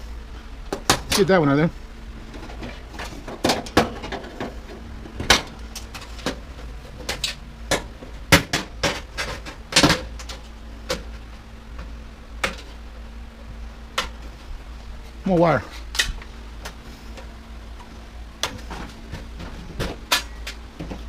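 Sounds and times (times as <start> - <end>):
sharp clicks and knocks of metal: 15.8 - 21.0.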